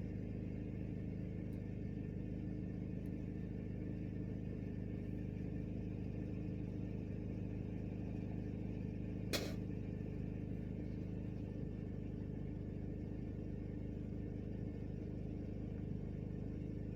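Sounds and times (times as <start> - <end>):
car engine and road drone: 0.0 - 16.9
short sharp click: 9.4 - 9.6.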